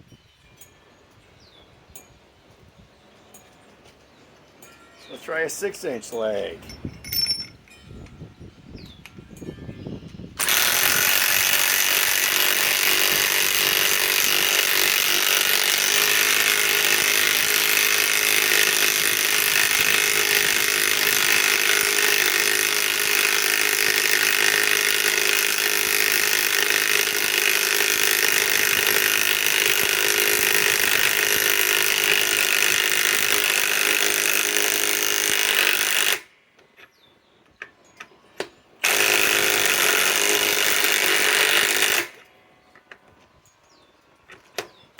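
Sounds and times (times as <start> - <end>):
impact wrench hammering: 10.4 - 36.3.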